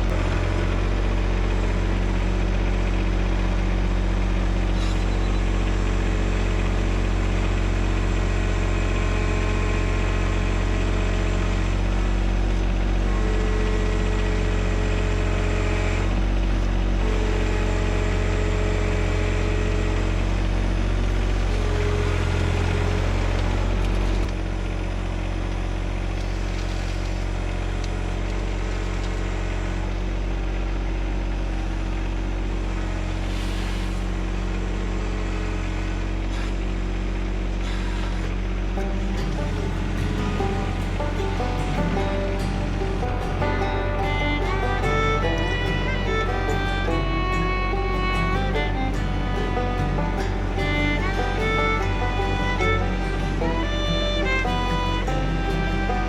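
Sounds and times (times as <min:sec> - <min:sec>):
tractor diesel engine running: 0:00.0 - 0:56.0
higher steady tone: 0:38.8 - 0:56.0.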